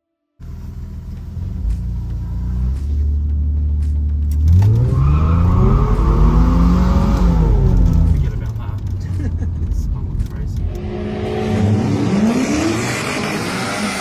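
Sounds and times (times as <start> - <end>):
car engine revving: 0.4 - 14.0.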